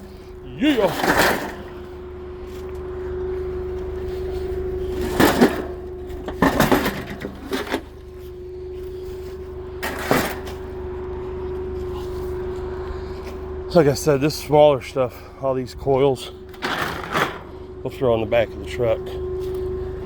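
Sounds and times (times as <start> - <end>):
engine hum: 0.0 - 20.0
knocks and clanks: 0.8 - 2.0, 5.0 - 7.9, 9.8 - 10.6, 16.5 - 17.5.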